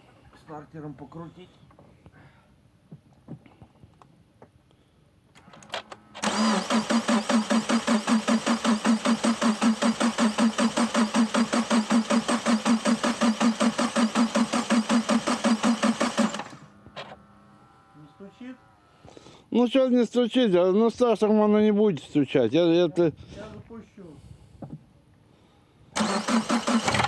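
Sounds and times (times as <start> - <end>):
engine cranking on starter motor: 5.4 - 17.2, 26.0 - 27.0.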